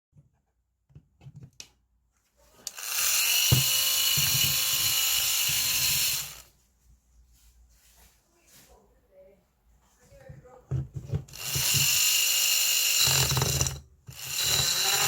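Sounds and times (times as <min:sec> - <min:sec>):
vacuum cleaner motor whine: 0:11.4 - 0:15.0.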